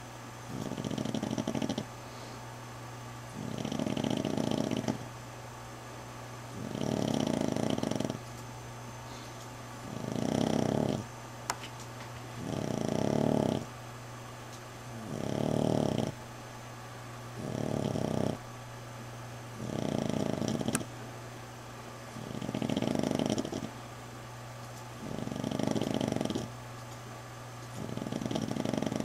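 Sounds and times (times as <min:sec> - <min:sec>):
dog snoring: 0:00.0 - 0:02.4, 0:03.4 - 0:05.1, 0:06.5 - 0:08.2, 0:09.8 - 0:11.1, 0:12.4 - 0:13.7, 0:14.9 - 0:16.2, 0:17.4 - 0:18.4, 0:19.6 - 0:20.9, 0:22.2 - 0:23.8, 0:25.0 - 0:26.5, 0:27.7 - 0:29.0
steady low hum: 0:00.0 - 0:29.0.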